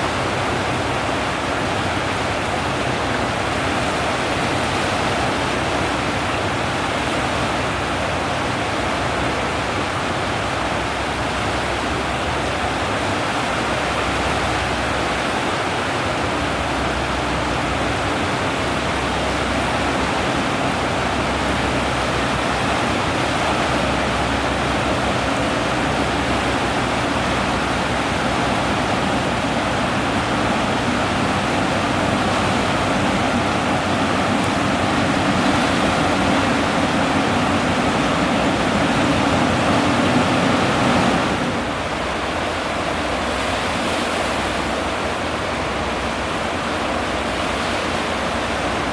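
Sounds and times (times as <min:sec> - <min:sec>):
sea water rushing: 0:00.0 - 0:48.9
wind rushing: 0:24.0 - 0:41.9.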